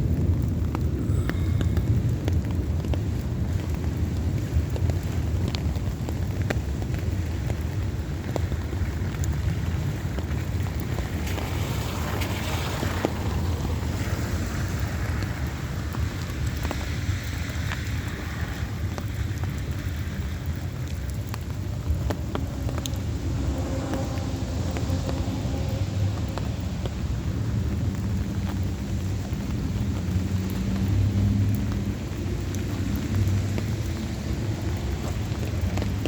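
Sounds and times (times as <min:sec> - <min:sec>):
heavy rain: 0:00.0 - 0:36.0
raindrop clicks: 0:00.0 - 0:36.0
wind rumble on microphone: 0:00.0 - 0:36.0.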